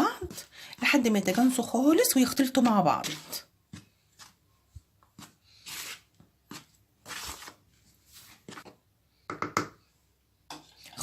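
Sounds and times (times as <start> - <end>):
dry ingredients stirred in bowl: 0.0 - 4.4, 5.1 - 8.8.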